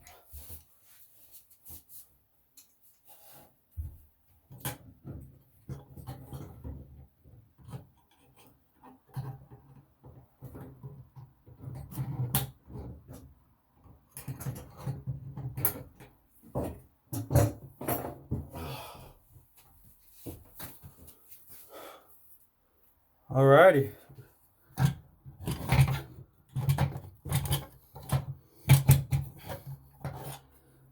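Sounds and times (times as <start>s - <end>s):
tools scraping and knocking on faucet: 24.7s - 30.6s.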